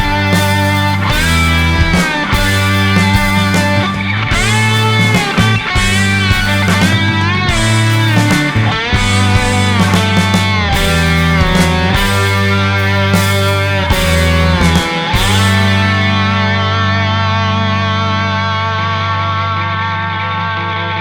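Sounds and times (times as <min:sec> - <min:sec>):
heavy bass: 0:00.0 - 0:21.0
instrumental rock guitar music: 0:00.0 - 0:21.0.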